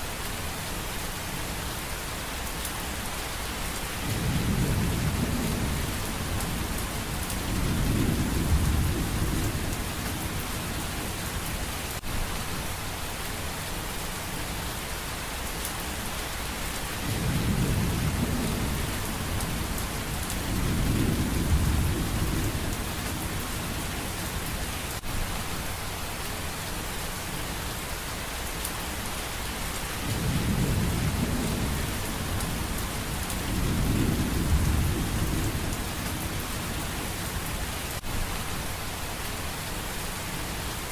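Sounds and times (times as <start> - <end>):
steady rain: 0.0 - 40.9
thunder rumbling: 17.0 - 24.2, 30.0 - 37.7.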